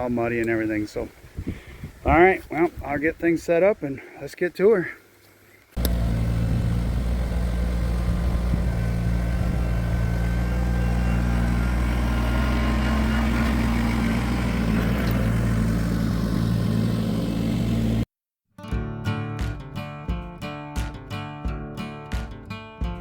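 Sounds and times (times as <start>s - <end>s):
tractor diesel engine running: 5.8s - 18.0s.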